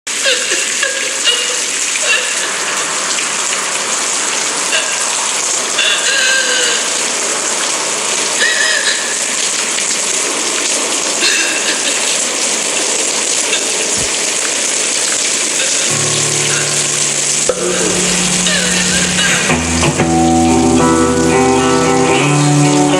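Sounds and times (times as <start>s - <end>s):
steady rain: 0.1s - 22.9s
music with low held notes: 15.9s - 22.9s.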